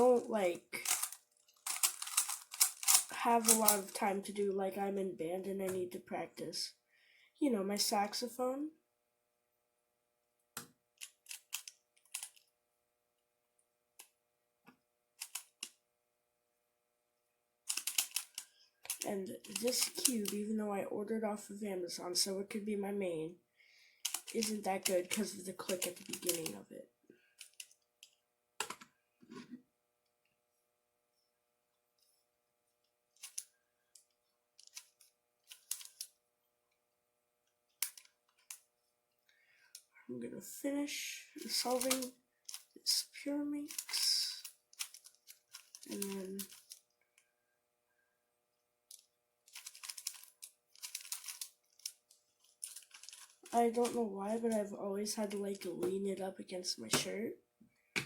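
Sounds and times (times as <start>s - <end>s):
plastic puzzle clicks: 0.8s - 3.9s, 11.0s - 12.4s, 17.7s - 19.0s, 24.1s - 24.5s, 25.1s - 26.5s, 34.6s - 36.1s, 37.8s - 38.6s, 41.5s - 42.7s, 43.7s - 46.8s, 48.9s - 52.0s, 52.6s - 54.0s.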